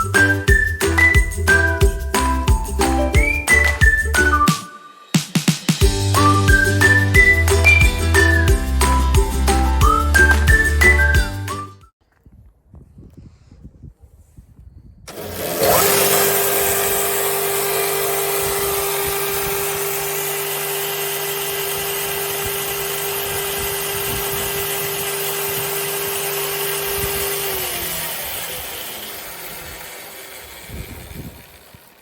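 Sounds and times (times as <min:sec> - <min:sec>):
stationary chain saw whining: 0:15.1 - 0:32.0.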